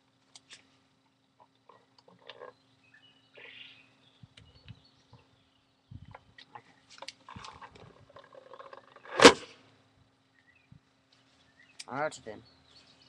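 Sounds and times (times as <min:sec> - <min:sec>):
airsoft cannon bang: 0:09.1 - 0:09.5.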